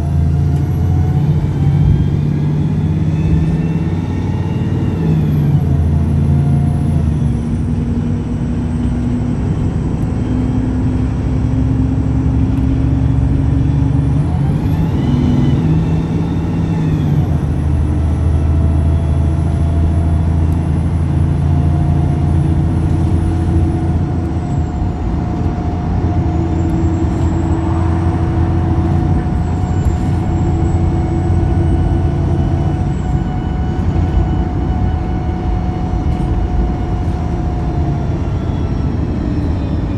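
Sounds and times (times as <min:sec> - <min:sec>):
bus engine running: 0:00.0 - 0:39.9
high whine: 0:12.3 - 0:39.9.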